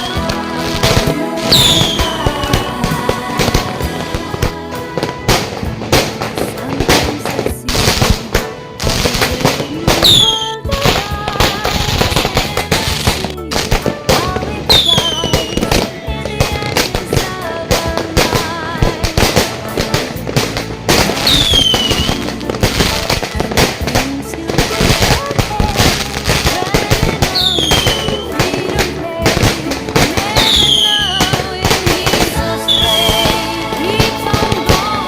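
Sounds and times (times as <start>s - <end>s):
fireworks crackling bangs: 0.0s - 35.0s
music: 0.0s - 35.0s
firework falling whistles: 1.0s - 2.9s, 9.6s - 10.6s, 14.7s - 15.7s, 21.1s - 22.2s, 27.3s - 28.4s, 30.2s - 31.2s, 32.6s - 33.5s.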